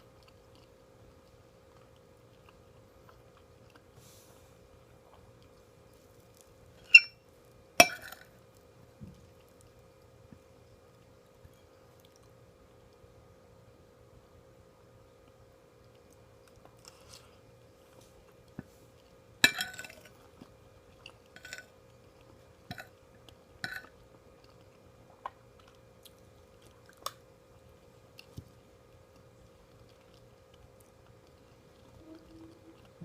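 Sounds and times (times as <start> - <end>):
quiet chewing: 0.0 - 7.6, 8.2 - 13.3, 15.2 - 33.0
cutlery clinking on a plate: 6.9 - 7.2, 19.5 - 20.1.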